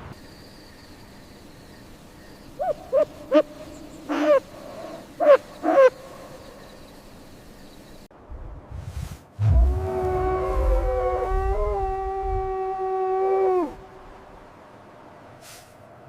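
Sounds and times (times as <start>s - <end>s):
owl hooting: 2.6s - 6.3s.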